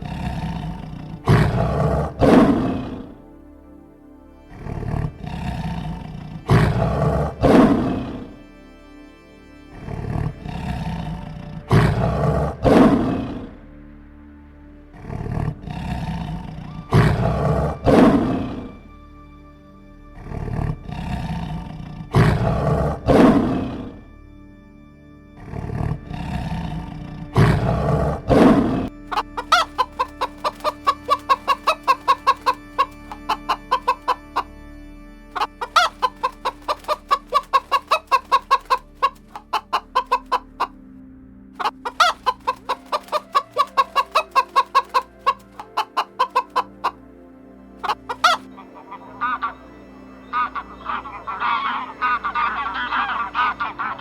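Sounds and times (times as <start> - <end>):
animal roaring: 0.0 - 3.2, 4.6 - 8.3
chicken clucking: 29.1 - 34.5, 35.4 - 40.7, 41.6 - 47.0, 47.8 - 49.6, 50.3 - 54.0.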